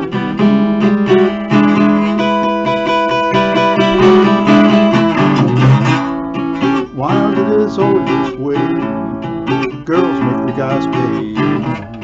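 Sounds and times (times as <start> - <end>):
jazz guitar chords: 0.0 - 12.0
person singing: 6.8 - 12.0.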